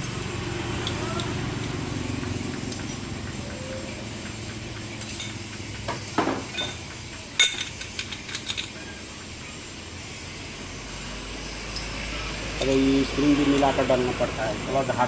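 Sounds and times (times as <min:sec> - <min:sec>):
metal clutch parts clinking: 0:04.9 - 0:05.5, 0:06.4 - 0:08.8, 0:12.6 - 0:13.8.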